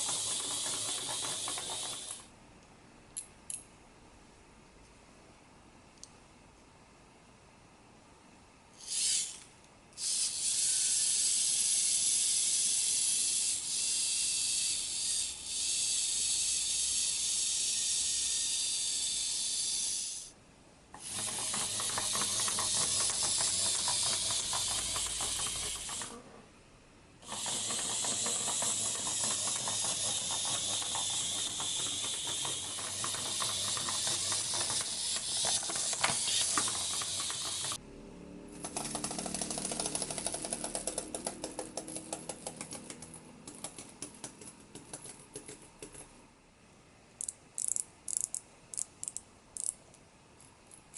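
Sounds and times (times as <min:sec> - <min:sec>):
wind-up toy gears whirring: 0:00.0 - 0:02.3, 0:08.8 - 0:20.3, 0:21.0 - 0:26.2, 0:27.2 - 0:37.8, 0:38.6 - 0:43.0, 0:47.2 - 0:49.8
rapid fine ticking: 0:21.2 - 0:26.1, 0:27.2 - 0:37.8.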